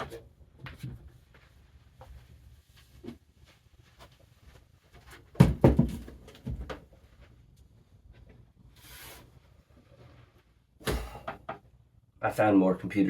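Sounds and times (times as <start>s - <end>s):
sharp knocks and thumps: 5.2s - 6.9s
rustling scrape: 8.7s - 10.5s.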